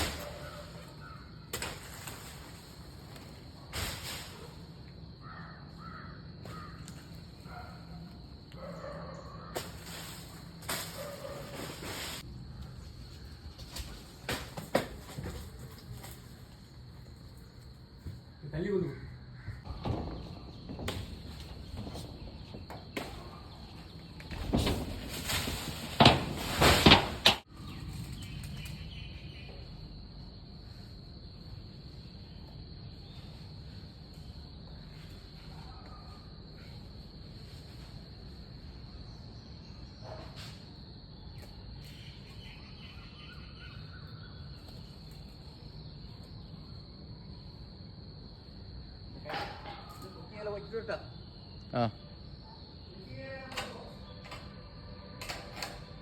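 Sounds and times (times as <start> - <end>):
insects droning: 0.0 - 56.0
knocks and rustles: 13.5 - 16.4, 19.6 - 28.5.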